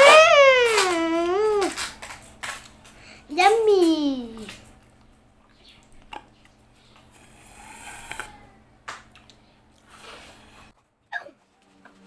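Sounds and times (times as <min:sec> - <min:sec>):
chewing: 0:04.4 - 0:10.7.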